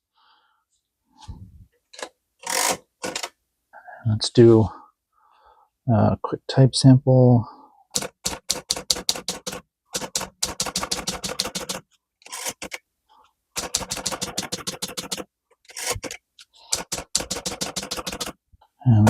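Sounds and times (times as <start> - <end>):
typewriter typing: 2.0 - 3.3, 7.9 - 12.8, 13.6 - 18.4.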